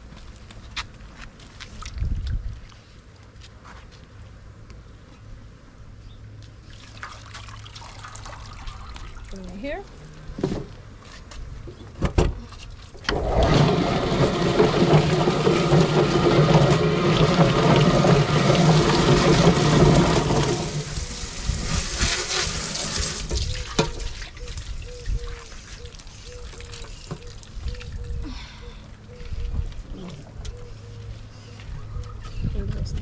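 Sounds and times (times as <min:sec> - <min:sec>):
hot water sloshing in a pot: 0:13.1 - 0:24.3.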